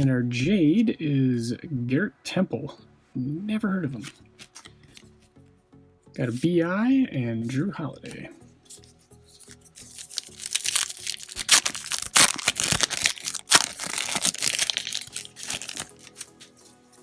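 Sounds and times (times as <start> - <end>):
wrapper crinkling and tearing: 4.0 - 5.2, 8.8 - 17.0.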